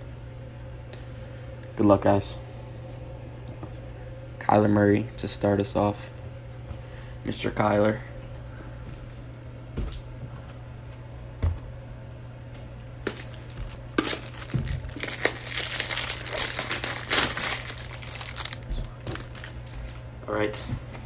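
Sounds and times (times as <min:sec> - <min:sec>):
plastic wrapper crinkling and tearing: 0:12.8 - 0:20.0.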